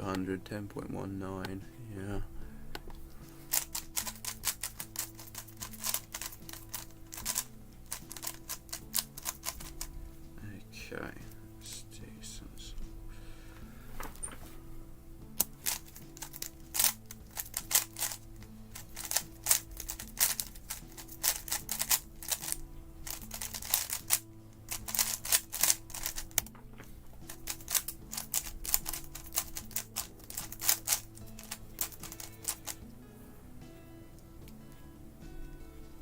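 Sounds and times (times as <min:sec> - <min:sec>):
background music: 0:00.0 - 0:36.0
puzzle cube plastic clicks: 0:03.4 - 0:10.0, 0:15.4 - 0:26.5, 0:27.2 - 0:32.8.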